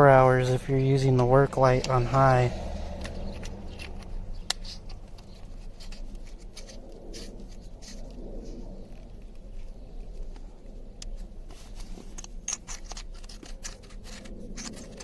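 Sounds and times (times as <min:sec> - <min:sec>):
flashlight scraping in hands: 0:01.9 - 0:08.6, 0:11.7 - 0:15.0.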